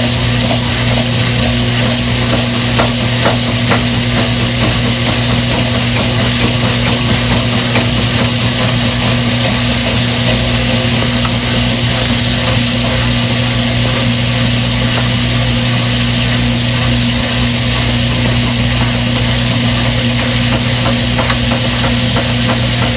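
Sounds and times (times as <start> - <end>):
machine hum: 0.0 - 22.9.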